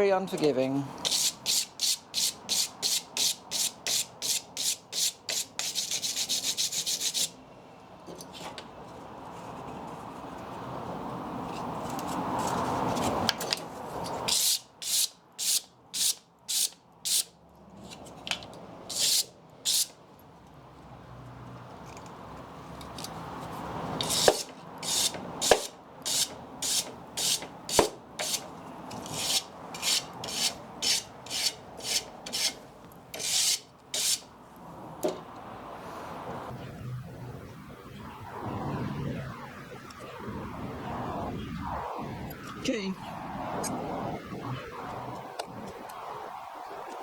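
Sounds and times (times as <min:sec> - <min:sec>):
hand sanding wood: 0:01.1 - 0:07.3, 0:18.9 - 0:19.9, 0:24.0 - 0:32.6, 0:33.2 - 0:34.3.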